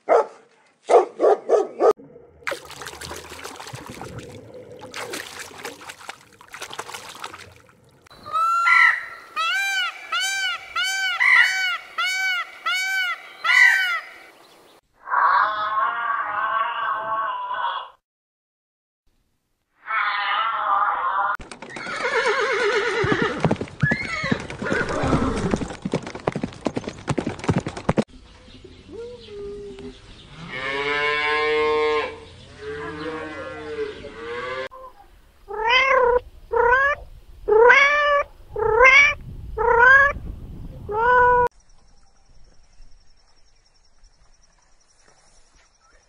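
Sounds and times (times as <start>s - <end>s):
animal calls: 34.6s - 40.2s.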